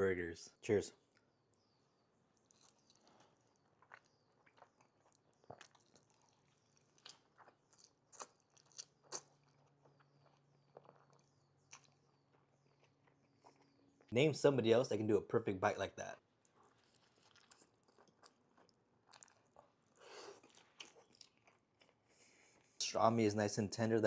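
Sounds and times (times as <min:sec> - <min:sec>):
close chewing crunches: 0:02.3 - 0:14.1, 0:16.4 - 0:22.8.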